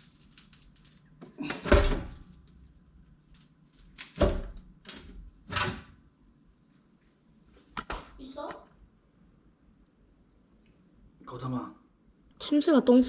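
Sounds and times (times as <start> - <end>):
stove door metal clunks: 1.4 - 2.2.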